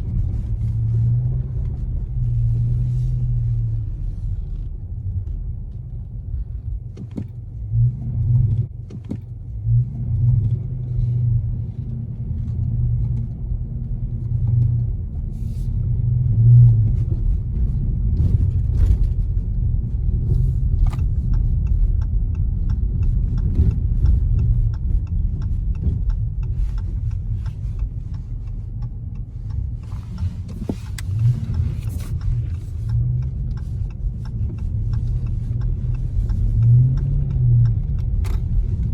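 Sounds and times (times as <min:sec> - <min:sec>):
car engine rumbling: 0:00.0 - 0:38.9
light clicks and crackles: 0:16.9 - 0:38.9.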